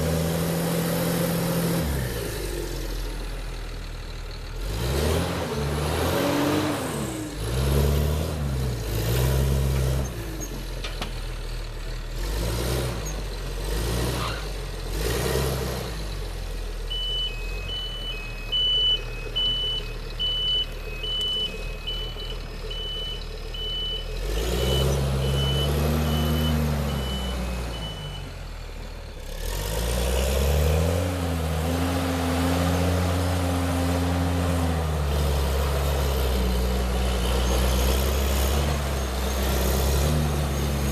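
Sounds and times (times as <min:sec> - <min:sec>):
heavy vehicle engine revving: 0:00.0 - 0:03.6, 0:04.4 - 0:10.9, 0:11.6 - 0:40.9
reversing alarm beeping: 0:16.9 - 0:28.5.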